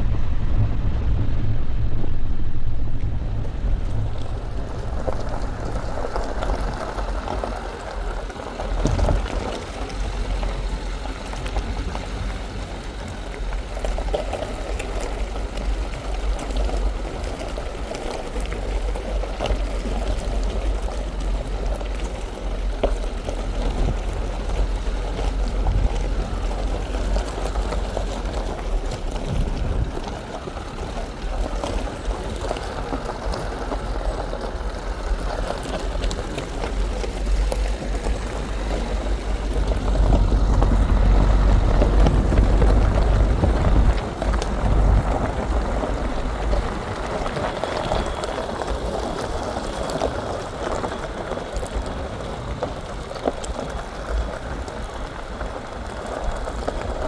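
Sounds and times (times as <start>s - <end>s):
rushing noise: 0.0s - 10.4s
car driving low rumble: 0.0s - 57.0s.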